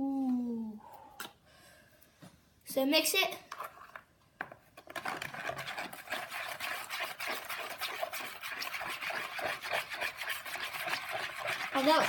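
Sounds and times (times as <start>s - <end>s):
utensil scraping a container: 4.8s - 12.0s.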